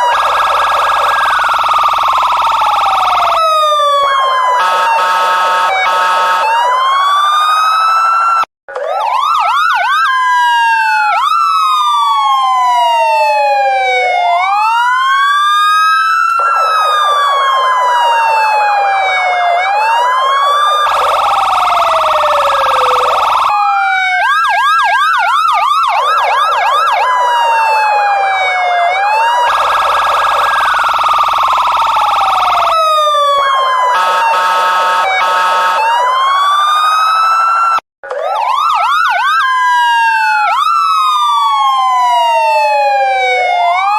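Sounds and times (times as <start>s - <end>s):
electronic police siren: 0.0s - 43.9s.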